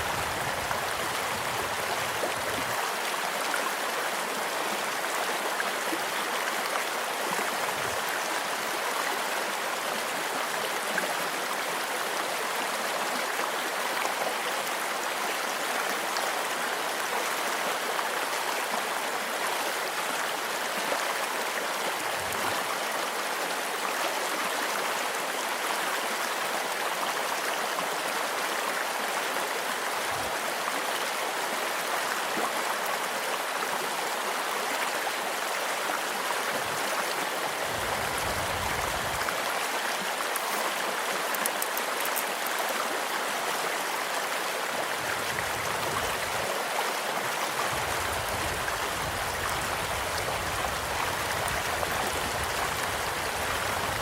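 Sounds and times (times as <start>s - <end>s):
stream flowing: 0.0s - 54.0s
faint campfire crackles: 40.3s - 42.8s.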